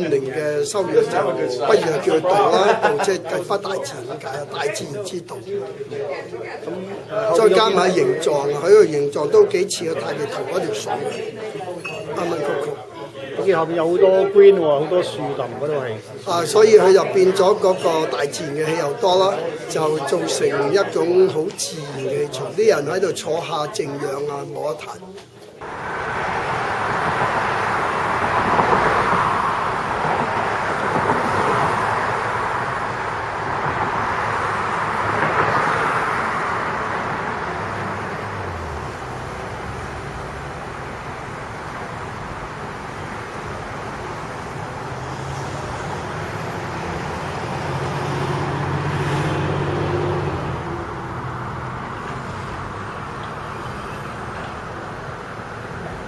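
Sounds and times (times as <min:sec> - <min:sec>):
road traffic passing: 0:00.0 - 0:56.0.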